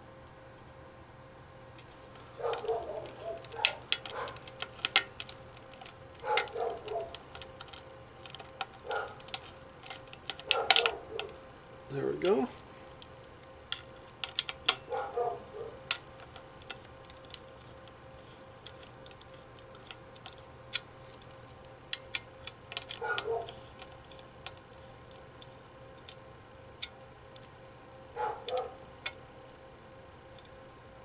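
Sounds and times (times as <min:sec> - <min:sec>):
handling noise: 0:01.8 - 0:11.5, 0:12.2 - 0:26.2.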